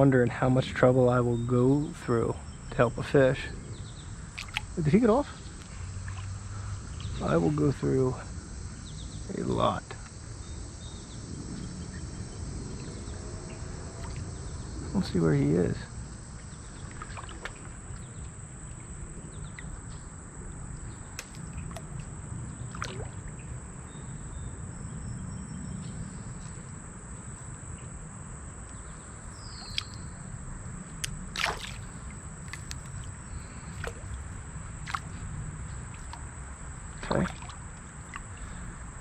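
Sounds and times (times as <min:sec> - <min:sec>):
water splashing around wading legs: 0:04.2 - 0:04.8, 0:16.8 - 0:18.1, 0:21.0 - 0:23.4, 0:29.5 - 0:30.2, 0:30.9 - 0:38.6
sharp splashes or knocks: 0:04.3 - 0:04.7, 0:21.1 - 0:22.0, 0:22.7 - 0:23.2, 0:29.6 - 0:30.0, 0:31.0 - 0:33.1, 0:33.7 - 0:35.2, 0:35.9 - 0:36.3, 0:37.0 - 0:38.3
low rush of moving water: 0:31.1 - 0:38.7.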